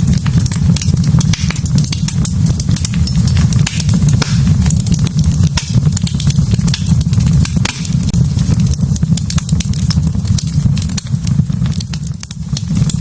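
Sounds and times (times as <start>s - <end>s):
low fire rumble: 0.0s - 13.0s
wood fire crackling and popping: 0.0s - 13.0s.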